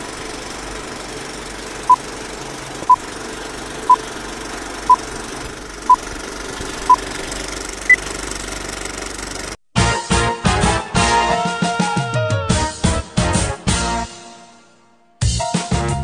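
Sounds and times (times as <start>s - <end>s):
engine-like drone: 0.0s - 9.6s
music: 9.8s - 16.0s.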